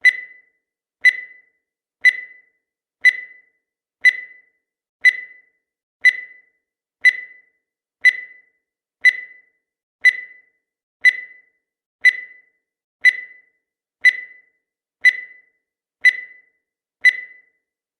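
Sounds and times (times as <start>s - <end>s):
high-pitched timer tick-beeps: 0.0s - 17.8s.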